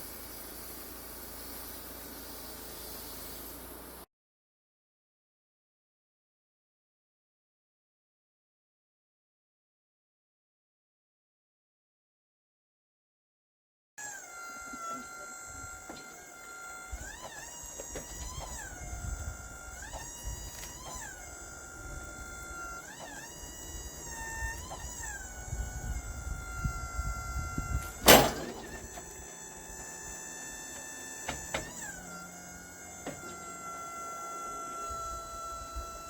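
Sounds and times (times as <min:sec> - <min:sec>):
sawmill motor whine: 0:00.0 - 0:04.1, 0:14.0 - 0:36.0
loud thunk: 0:28.0 - 0:29.1.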